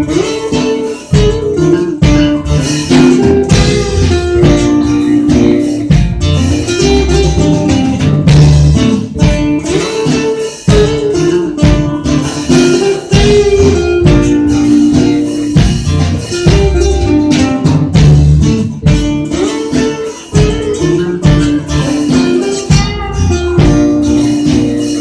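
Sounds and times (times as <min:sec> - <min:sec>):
bass guitar: 0:00.0 - 0:25.0
electric guitar: 0:00.0 - 0:25.0
steady drum beat: 0:00.0 - 0:25.0.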